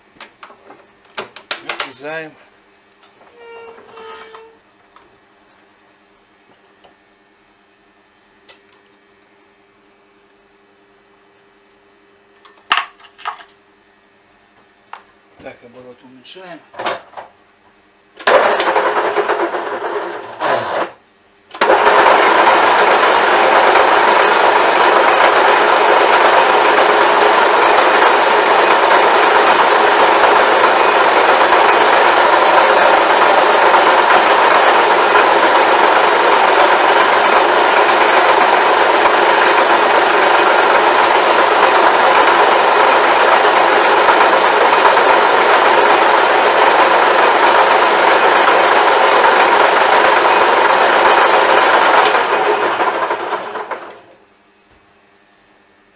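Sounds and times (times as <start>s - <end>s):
metal lathe running: 21.7s - 53.8s.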